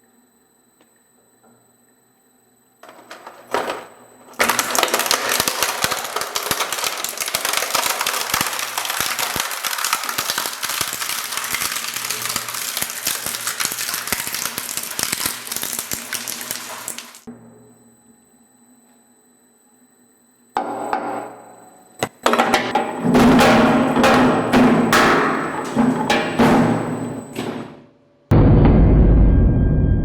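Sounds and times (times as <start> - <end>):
industrial shredder crushing material: 2.8 - 17.3, 22.1 - 27.8.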